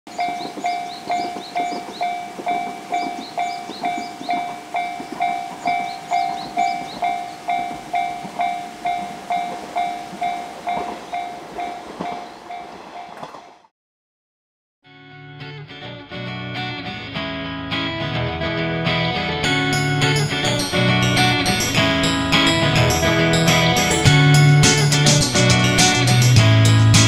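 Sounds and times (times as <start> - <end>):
level crossing bell ringing: 0.2 - 13.2.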